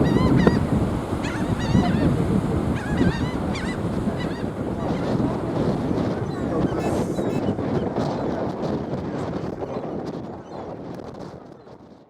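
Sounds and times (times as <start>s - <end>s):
birds calling: 0.0s - 7.4s
ocean surf: 0.0s - 7.4s
wind: 0.0s - 12.0s.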